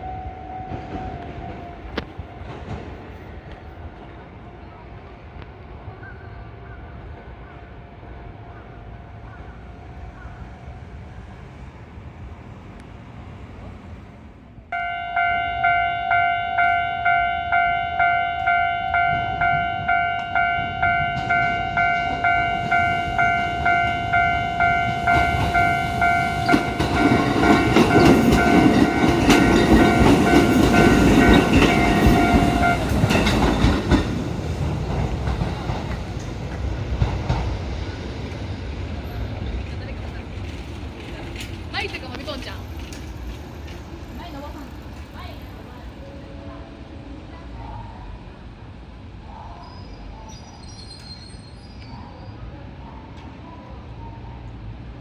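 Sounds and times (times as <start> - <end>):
train wheels clacking on rails: 0.0 - 3.8, 15.3 - 45.8
level crossing warning bell: 14.7 - 33.8.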